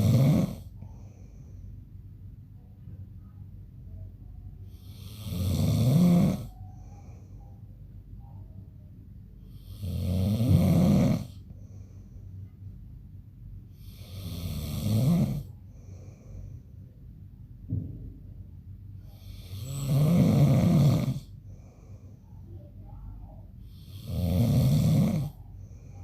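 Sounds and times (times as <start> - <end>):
man snoring: 0.0 - 0.7, 4.8 - 6.5, 9.6 - 11.4, 13.8 - 15.5, 19.2 - 21.4, 23.8 - 25.4
faint breathing: 0.0 - 8.5, 9.3 - 17.3, 18.9 - 26.0.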